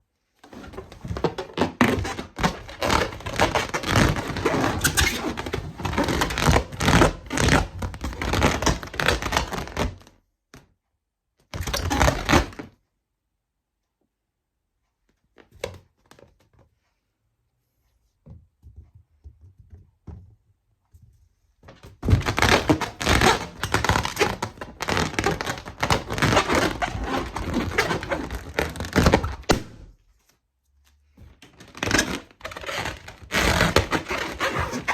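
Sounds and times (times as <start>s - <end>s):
rubber balloons rubbing and crinkling: 0.4s - 10.1s, 11.6s - 12.6s, 21.7s - 30.0s, 31.2s - 34.9s.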